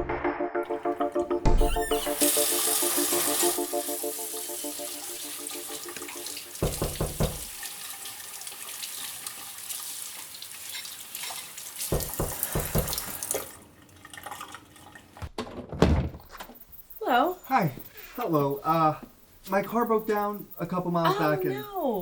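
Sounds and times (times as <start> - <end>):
tap water running into sink: 1.7 - 15.3
low knocks: 6.6 - 7.5.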